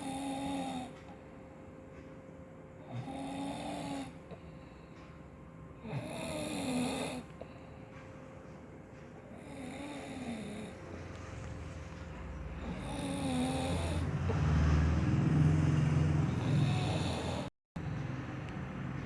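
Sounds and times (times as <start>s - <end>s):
person snoring: 0.0s - 0.9s, 2.8s - 4.2s, 5.8s - 7.3s, 9.4s - 10.8s, 12.5s - 14.9s, 16.3s - 17.5s.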